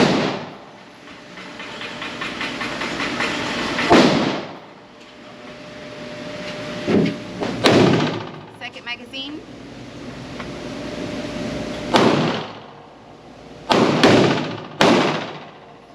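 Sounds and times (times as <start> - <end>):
pistol shots with echo: 0.0 - 0.6, 3.9 - 4.6, 11.9 - 12.7, 13.7 - 15.6.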